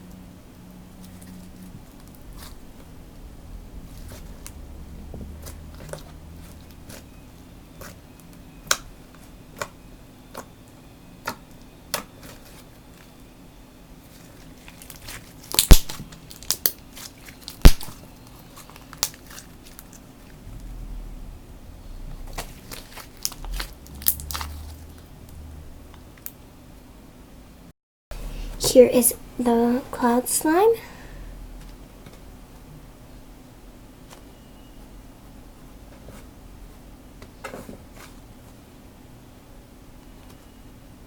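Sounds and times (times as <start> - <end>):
slime popping and clicking: 15.5 - 16.8.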